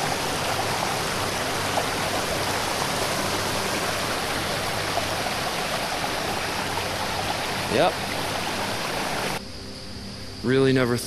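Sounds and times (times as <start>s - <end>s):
flooded stream rushing: 0.0s - 9.4s.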